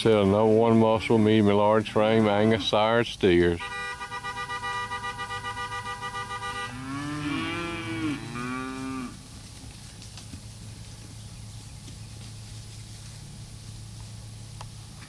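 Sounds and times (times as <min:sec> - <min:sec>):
cattle mooing: 0:02.0 - 0:03.0, 0:06.1 - 0:09.2
steady horn tone: 0:02.2 - 0:09.2.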